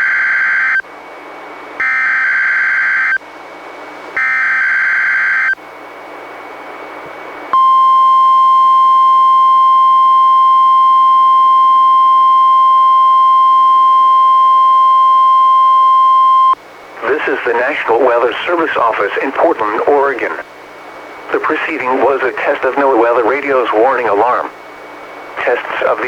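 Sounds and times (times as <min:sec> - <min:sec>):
steady warning alarm tone: 0:01.8 - 0:03.2, 0:04.2 - 0:05.6, 0:07.6 - 0:20.4
radio hiss: 0:16.8 - 0:26.0.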